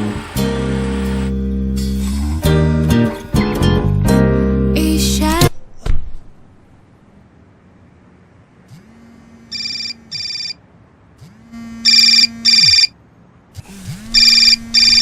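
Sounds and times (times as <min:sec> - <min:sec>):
low buzz: 0:00.0 - 0:02.8, 0:08.5 - 0:10.4, 0:11.2 - 0:12.9, 0:13.5 - 0:15.0
short high beeps: 0:09.5 - 0:10.6, 0:11.8 - 0:12.9, 0:14.2 - 0:15.0.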